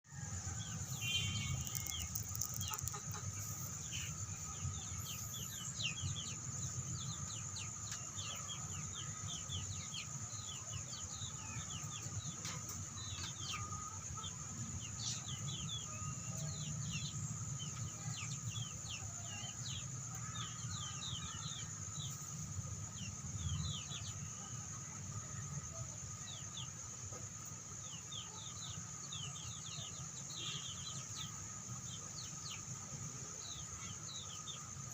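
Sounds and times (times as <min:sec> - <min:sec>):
chickens clucking: 0:01.5 - 0:04.5.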